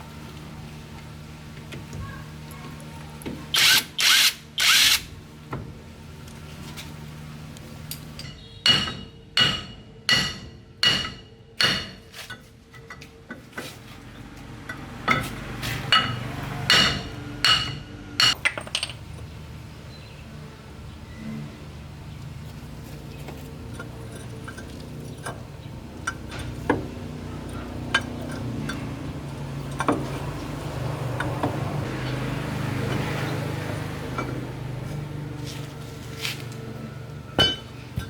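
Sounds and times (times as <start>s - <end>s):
power tool bursts: 3.5s - 5.1s
hammer striking metal: 8.2s - 12.0s, 15.9s - 18.8s, 37.4s - 37.8s.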